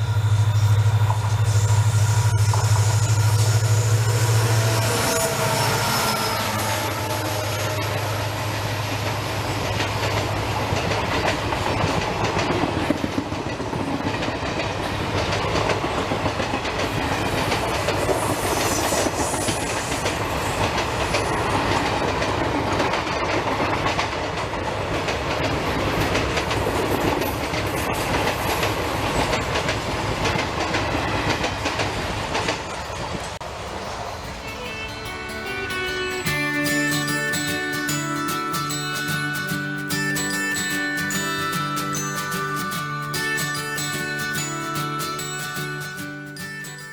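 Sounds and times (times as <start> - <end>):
train rolling past on rails: 0.0 - 46.9
clickety-clack over rail joints: 8.6 - 18.2, 19.8 - 33.4.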